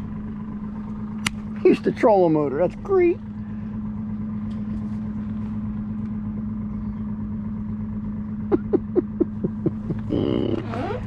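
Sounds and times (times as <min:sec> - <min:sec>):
outboard motor idling: 0:00.0 - 0:11.0.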